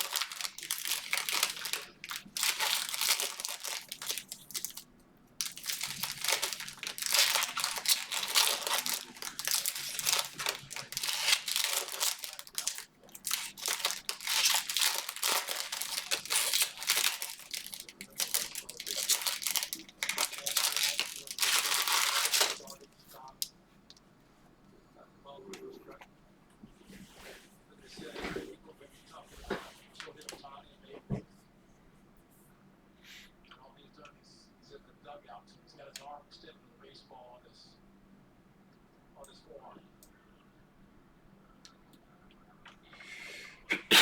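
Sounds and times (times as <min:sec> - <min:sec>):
plastic wrappers crinkling and tearing: 0:00.0 - 0:23.5.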